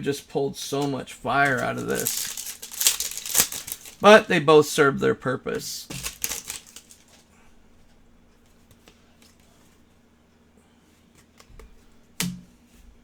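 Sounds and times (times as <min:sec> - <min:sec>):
cards rustling: 0:00.6 - 0:04.3, 0:05.7 - 0:07.3
cards ticking as moved: 0:00.7 - 0:04.2, 0:05.8 - 0:07.2.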